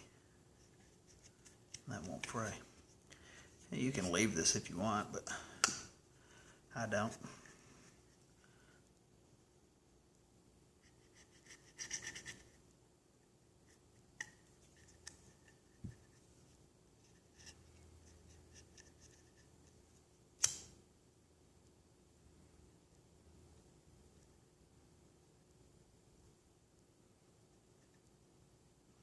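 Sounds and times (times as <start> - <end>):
sharp click: 20.4 - 20.8.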